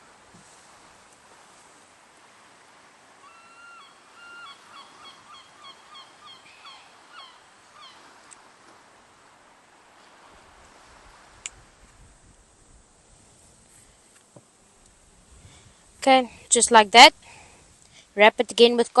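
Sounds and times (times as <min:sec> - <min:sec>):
bird honking call: 0:03.2 - 0:08.1.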